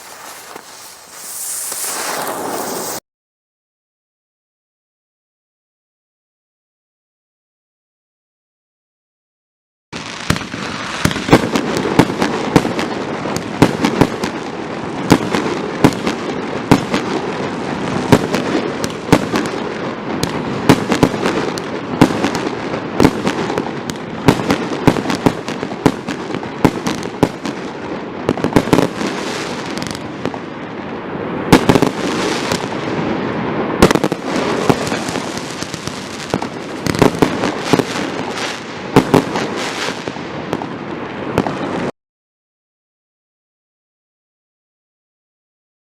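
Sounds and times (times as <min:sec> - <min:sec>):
firework crackle: 0:00.0 - 0:03.0, 0:10.0 - 0:41.9
firework launch thumps and bursts: 0:00.0 - 0:03.0
loud firework reports: 0:00.0 - 0:03.0, 0:31.5 - 0:41.9.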